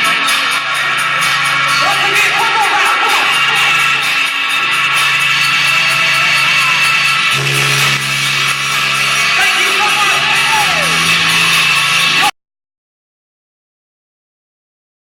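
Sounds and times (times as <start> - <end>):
fast hi-hat beat: 0.0 - 12.3
live electronic rock band: 0.0 - 12.3
synthesizer bass notes: 0.0 - 12.3
voice gliding in pitch: 7.3 - 11.2.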